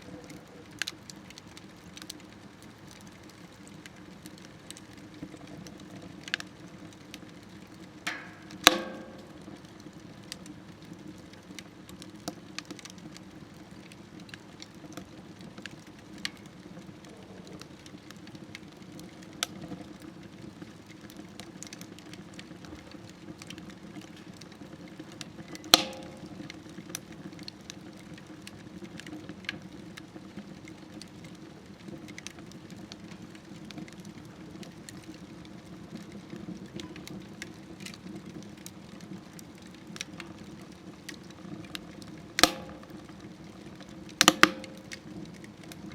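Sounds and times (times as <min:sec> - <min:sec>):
fire crackling and snapping: 0:00.0 - 0:45.9
wood fire burning: 0:00.0 - 0:45.9
sharp loud pop: 0:08.1 - 0:09.5, 0:25.8 - 0:26.5, 0:42.4 - 0:43.1, 0:44.2 - 0:45.0.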